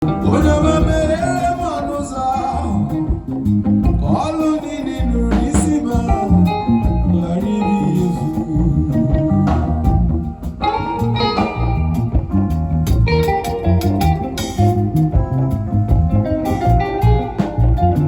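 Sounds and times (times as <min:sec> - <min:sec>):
blues band music: 0:00.0 - 0:18.0
deep bass line: 0:00.0 - 0:18.0.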